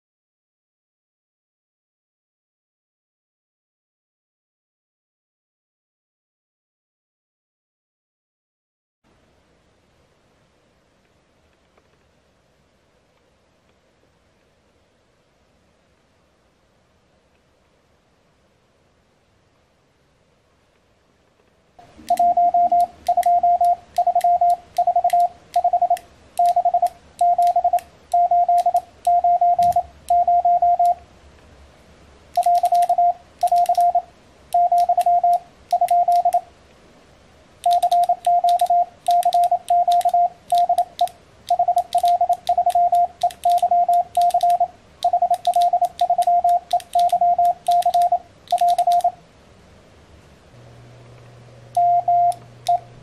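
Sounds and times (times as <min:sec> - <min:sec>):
faint low hum: 0:09.1 - 0:53.0
morse code beeps: 0:22.0 - 0:31.0, 0:32.4 - 0:36.4, 0:37.6 - 0:49.2, 0:51.8 - 0:52.9.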